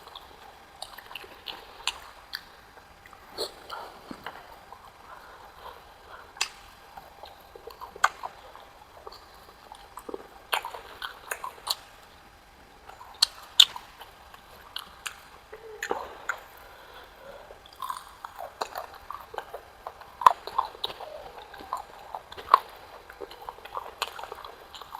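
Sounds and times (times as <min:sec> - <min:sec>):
wet mouth clicks and smacks: 0:00.0 - 0:12.1.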